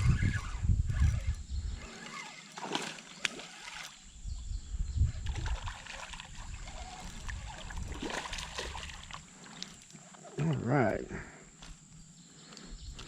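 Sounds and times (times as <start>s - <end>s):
light water splashing: 1.9s - 4.0s, 5.2s - 10.7s.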